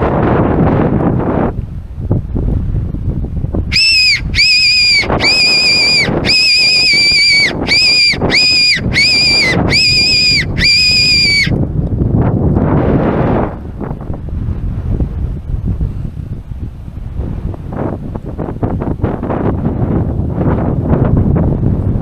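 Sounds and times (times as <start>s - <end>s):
low wind rumble: 0.0s - 22.0s
high-pitched whistle squeals: 3.7s - 11.6s.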